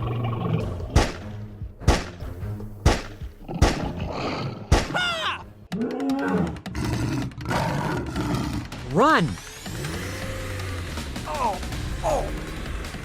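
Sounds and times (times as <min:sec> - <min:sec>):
sharp thumps: 0:00.9 - 0:04.0.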